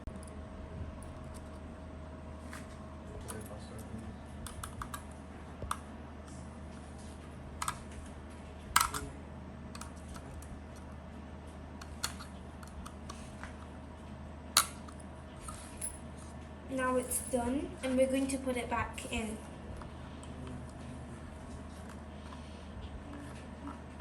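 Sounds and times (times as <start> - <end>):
faint steady hum: 0.0 - 24.0
clicks of small parts handled: 7.6 - 7.8, 8.8 - 9.1.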